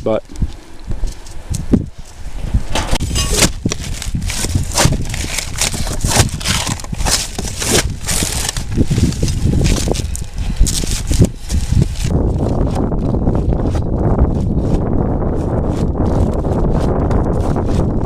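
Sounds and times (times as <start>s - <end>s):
wind rumble on microphone: 0.0s - 18.0s
knocks and scrapes: 1.0s - 14.9s.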